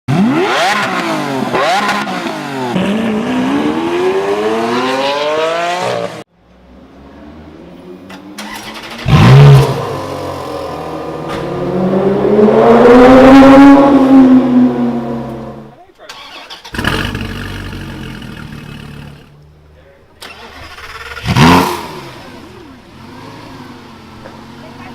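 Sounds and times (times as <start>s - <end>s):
supercar engine accelerating: 0.1s - 15.8s, 20.4s - 24.9s
second engine revving: 8.3s - 19.4s, 20.2s - 24.9s.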